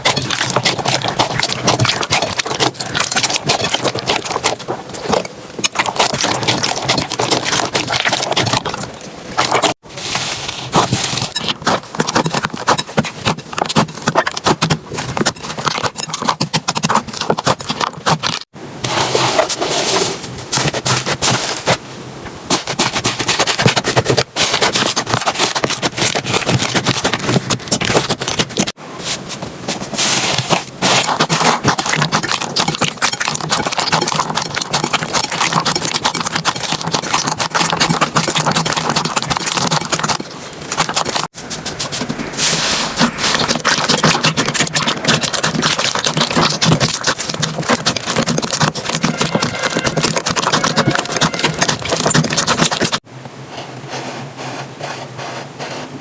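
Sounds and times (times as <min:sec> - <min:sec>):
slime crackling and popping: 0:43.0 - 0:53.0.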